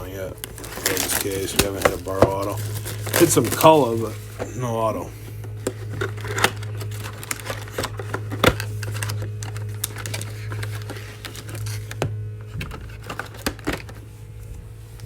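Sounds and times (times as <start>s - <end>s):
card packaging rustling and clicking: 0.0s - 15.0s
steady low hum: 0.0s - 15.0s.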